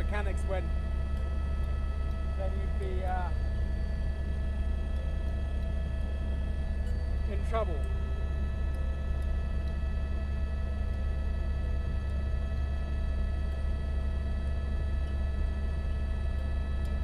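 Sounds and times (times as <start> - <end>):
high whining engine tones: 0.0 - 14.8
helicopter rotor drone: 0.0 - 17.0.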